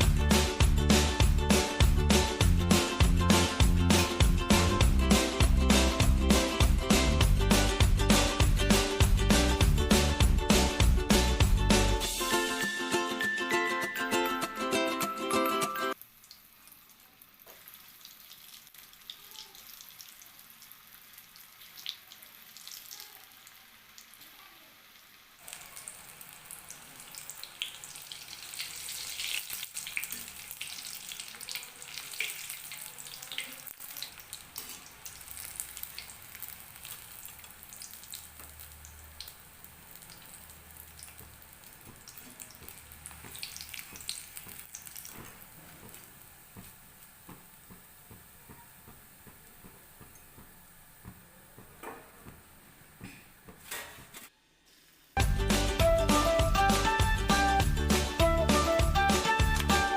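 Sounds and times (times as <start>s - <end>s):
deep-frying sizzle with crackles: 15.9s - 55.3s.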